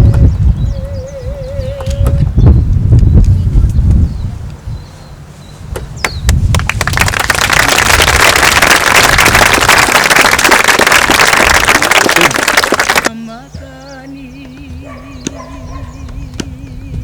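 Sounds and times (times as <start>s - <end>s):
audience applauding: 6.6s - 13.1s.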